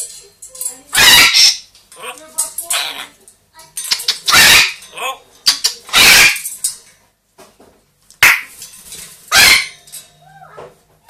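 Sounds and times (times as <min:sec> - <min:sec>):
parrot chirps and squeaks: 0:00.8 - 0:03.2, 0:03.8 - 0:06.7, 0:09.3 - 0:10.6
parrot squawking: 0:00.9 - 0:03.2, 0:03.9 - 0:06.6, 0:08.2 - 0:08.5, 0:09.3 - 0:09.8.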